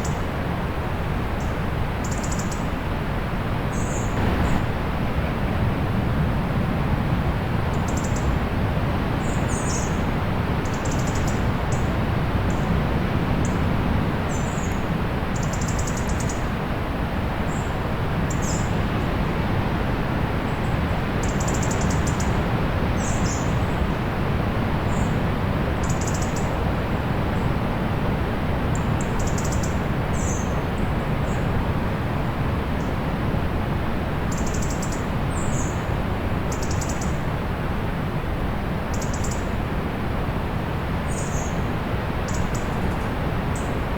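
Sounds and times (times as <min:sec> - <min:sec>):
distant sea surf: 0:04.2 - 0:07.8.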